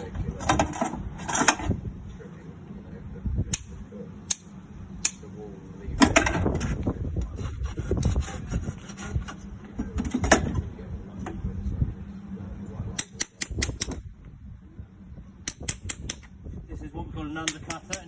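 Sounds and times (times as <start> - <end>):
tools scraping hoof: 6.2 - 10.0.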